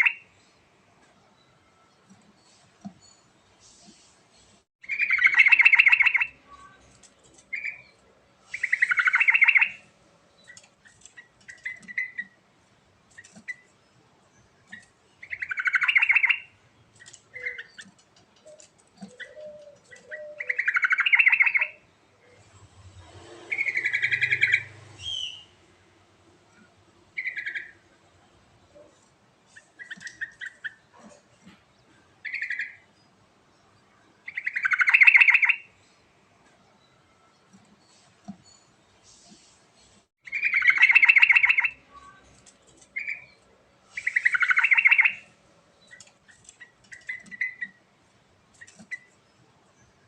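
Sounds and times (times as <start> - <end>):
bird singing bubbling phrases: 19.1 - 21.9.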